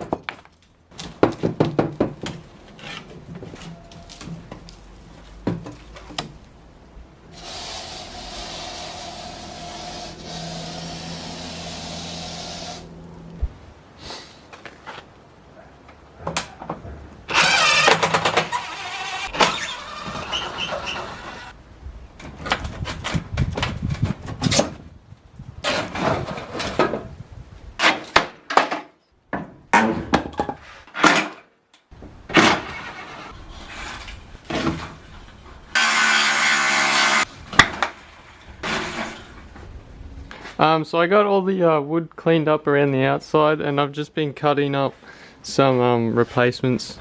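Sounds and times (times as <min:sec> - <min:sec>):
scraping: 0:00.6 - 0:13.7, 0:16.5 - 0:21.6
power tools running: 0:07.3 - 0:13.4, 0:17.3 - 0:21.5, 0:35.8 - 0:37.3.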